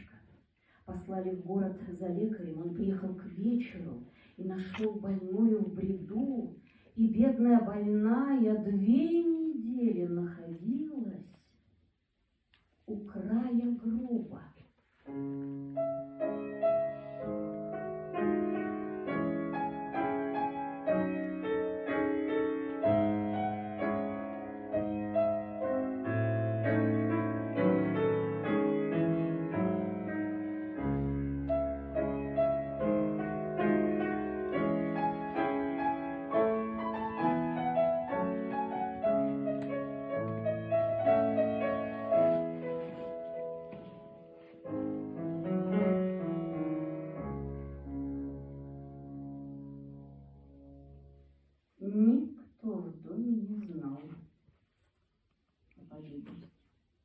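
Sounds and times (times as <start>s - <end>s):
piano notes and chords: 15.0s - 51.5s.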